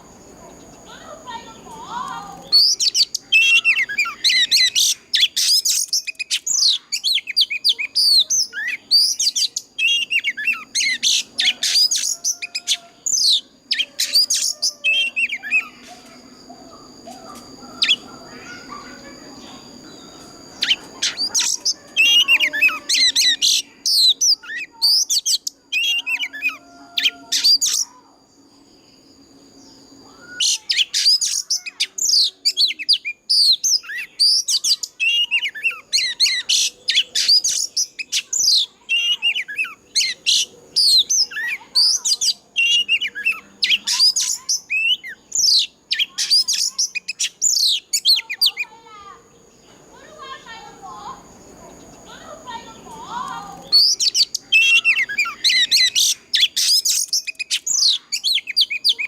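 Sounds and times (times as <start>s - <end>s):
bird singing loud whistles: 2.0s - 16.1s, 19.8s - 28.1s, 29.8s - 48.7s, 53.2s - 59.0s.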